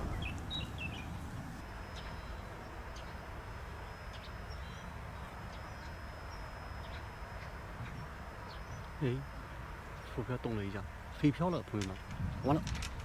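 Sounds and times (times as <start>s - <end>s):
bird chirps: 0.0s - 3.2s
low background rumble: 0.0s - 3.2s.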